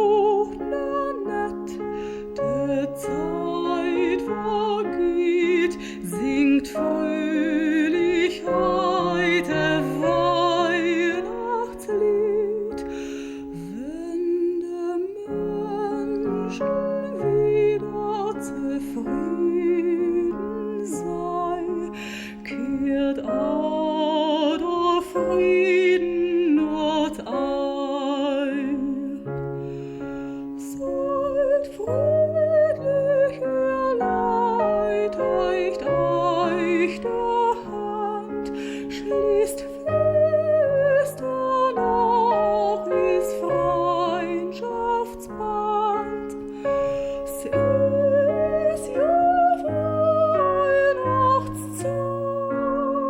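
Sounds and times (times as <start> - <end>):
person singing with vibrato: 0.0 - 53.0.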